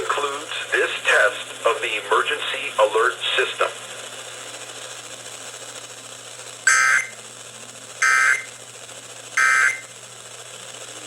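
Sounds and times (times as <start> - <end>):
receiver hiss and hum: 0.0 - 11.0
shrill digital squawks: 6.7 - 7.2, 8.0 - 8.5, 9.4 - 9.9.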